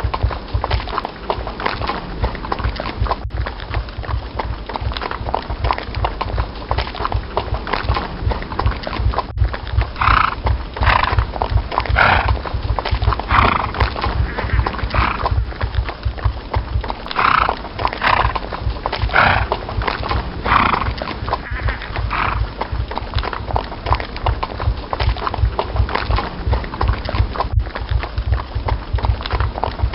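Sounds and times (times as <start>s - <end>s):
horse hooves galloping: 0.0s - 29.9s
horse calls: 9.0s - 27.6s.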